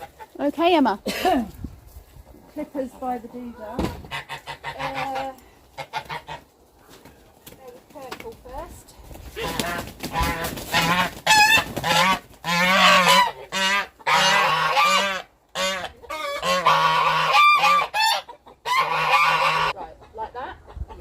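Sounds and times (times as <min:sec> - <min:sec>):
goose honking: 0:04.0 - 0:06.5, 0:09.4 - 0:19.8.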